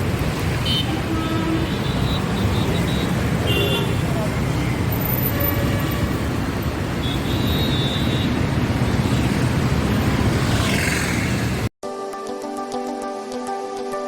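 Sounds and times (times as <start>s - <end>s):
music: 11.8s - 14.0s.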